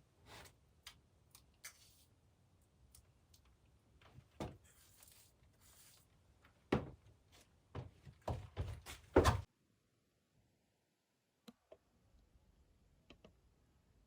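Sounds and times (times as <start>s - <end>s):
dull knocks and thuds: 7.8s - 9.5s.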